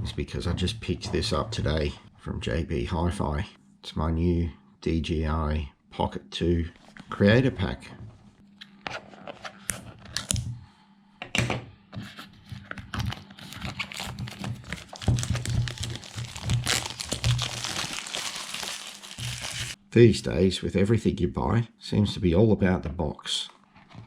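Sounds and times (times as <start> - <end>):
packaging being torn and crinkled: 12.9 - 19.8.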